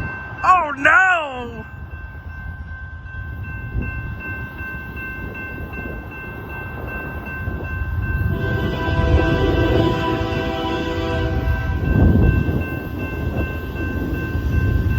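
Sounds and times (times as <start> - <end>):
railroad crossing bell ringing: 0.0 - 14.9
locomotive air horn blowing: 8.3 - 11.9.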